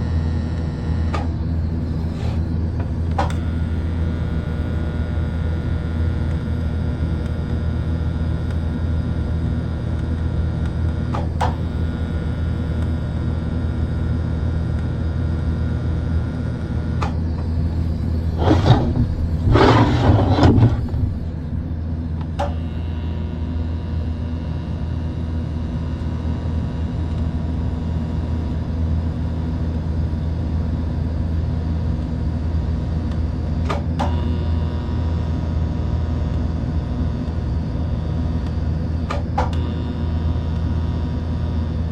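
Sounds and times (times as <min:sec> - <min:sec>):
workshop machinery humming: 0:00.4 - 0:05.6, 0:16.8 - 0:24.1.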